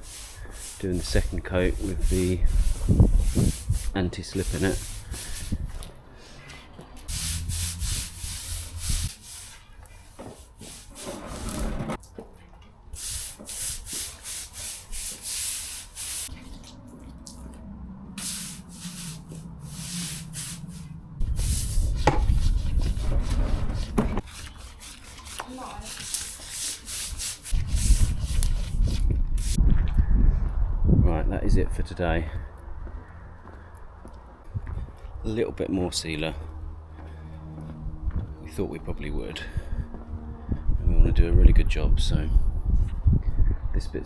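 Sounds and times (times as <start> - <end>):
brush scrubbing concrete: 0.0 - 5.6, 7.1 - 11.8, 13.0 - 16.7, 18.2 - 29.6
low rumble: 16.3 - 23.6, 29.1 - 43.7.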